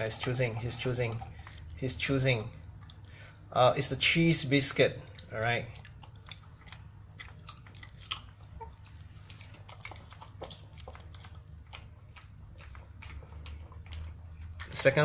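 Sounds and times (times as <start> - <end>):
dog crunching a biscuit: 4.8 - 15.0.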